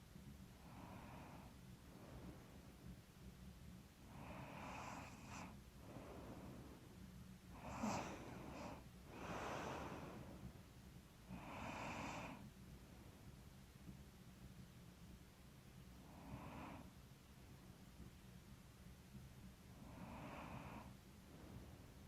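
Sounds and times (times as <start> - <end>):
woman breathing heavily in sleep: 0.6 - 2.8, 4.0 - 12.5, 19.8 - 22.0.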